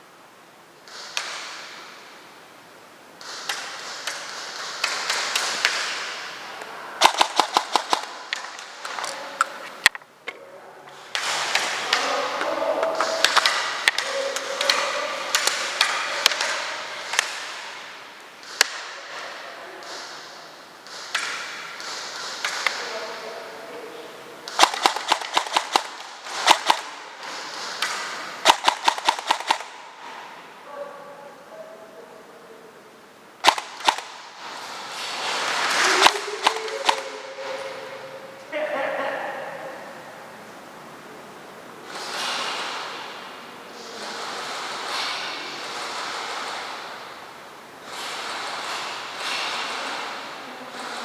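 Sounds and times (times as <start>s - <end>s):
steady hiss: 0.0s - 51.0s
airsoft rifle shots: 3.2s - 6.4s, 7.0s - 9.0s, 13.0s - 19.2s, 20.8s - 22.9s, 24.5s - 30.5s, 33.4s - 37.5s
rifle firing rapid shots: 7.0s - 8.6s, 24.5s - 29.9s, 33.4s - 34.6s, 35.5s - 37.2s.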